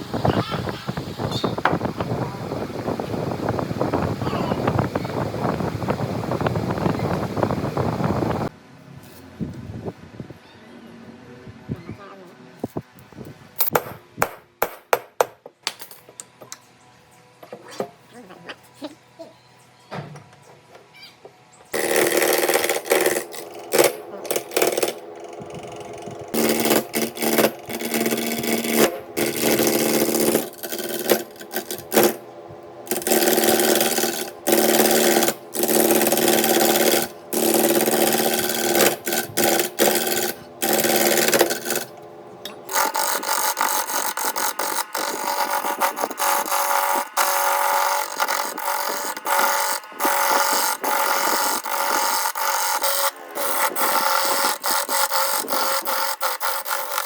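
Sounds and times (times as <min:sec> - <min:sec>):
tools cutting and rasping wood: 0:21.7 - 0:32.2, 0:32.9 - 0:57.0.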